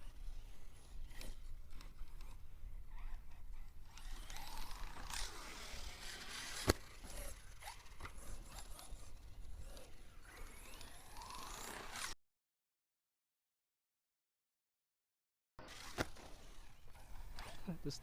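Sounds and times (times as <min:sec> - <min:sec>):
electric motor whining: 0:00.0 - 0:12.2, 0:15.6 - 0:17.9
grinding from stripped gears: 0:03.8 - 0:12.1.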